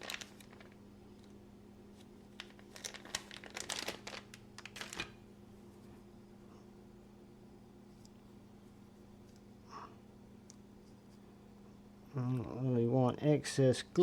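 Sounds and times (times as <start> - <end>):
paper crinkling and ticking: 0.0 - 5.2
faint steady hum: 0.0 - 14.0.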